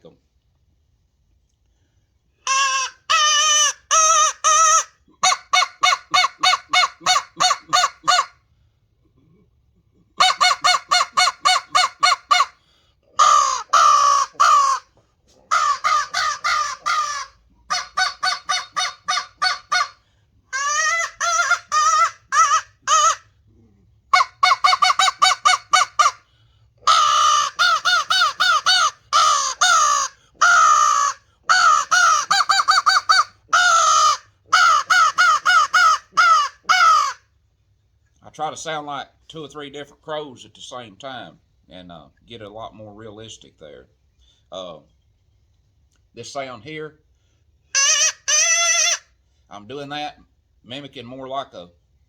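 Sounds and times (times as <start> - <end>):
crow call caws: 13.2 - 14.9, 26.9 - 37.2.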